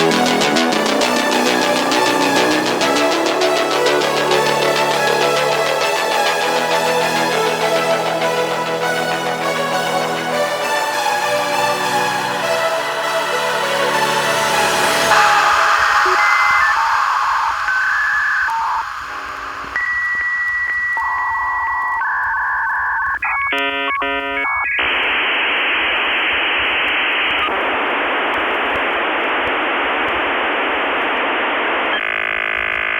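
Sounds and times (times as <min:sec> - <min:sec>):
steady electronic tones: 0:00.0 - 0:32.9
radio static hiss: 0:13.0 - 0:32.9.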